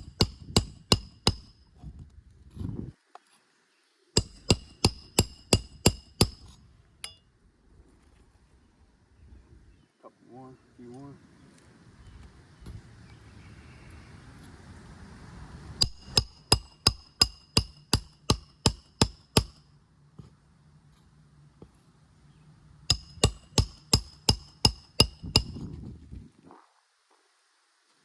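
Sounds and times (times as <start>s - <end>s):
hammer striking metal: 4.2s - 6.4s, 15.8s - 19.6s, 22.9s - 25.6s.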